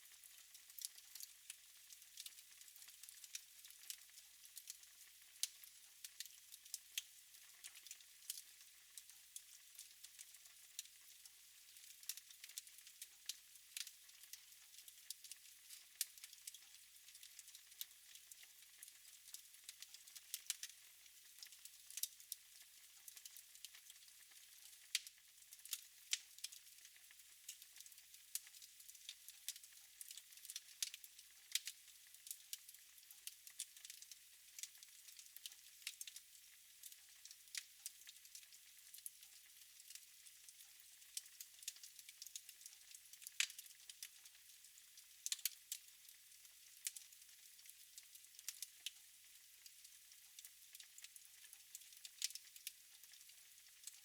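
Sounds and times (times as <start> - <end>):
wood fire crackling: 0.6 - 1.3, 13.7 - 20.7, 21.4 - 22.2, 24.7 - 26.9, 27.5 - 39.0, 41.2 - 44.0, 45.2 - 45.8, 46.8 - 48.7, 50.7 - 54.0.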